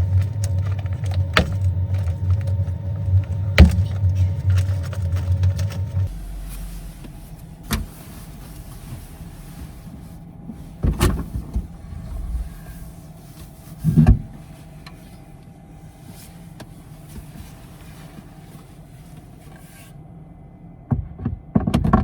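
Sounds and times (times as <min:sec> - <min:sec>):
low steady hum: 0:00.0 - 0:21.6.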